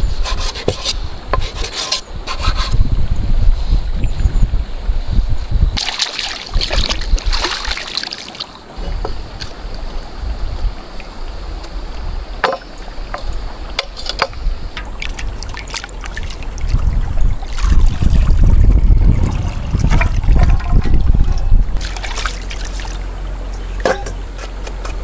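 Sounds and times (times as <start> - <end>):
rustling scrape: 0.0 - 2.8
steady low rumble: 2.2 - 5.8, 8.8 - 25.0
water sloshing and trickling: 5.4 - 24.6.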